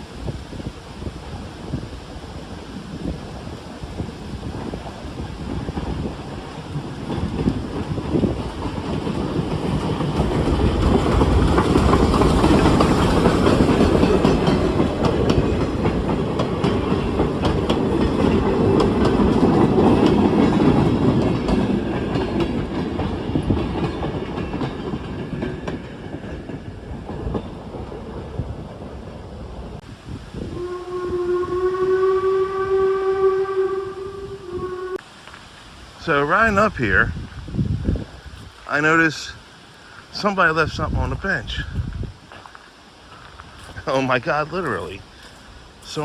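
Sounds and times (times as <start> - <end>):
train wheels clattering on rails: 3.1 - 29.9.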